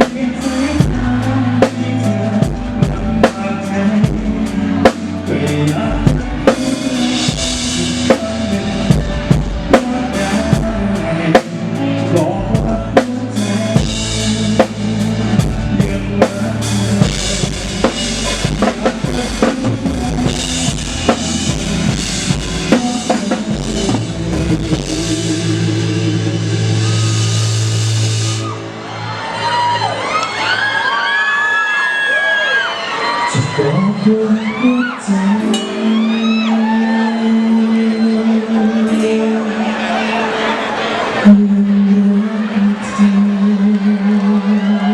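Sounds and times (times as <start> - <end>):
drum kit beat: 0.0 - 28.7
live band playing: 0.0 - 44.9.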